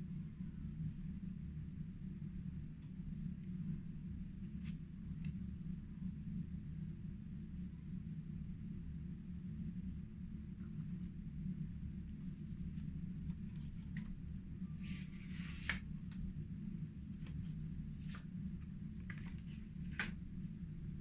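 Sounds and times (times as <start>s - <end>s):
paper rustling and scraping: 12.2s - 20.4s.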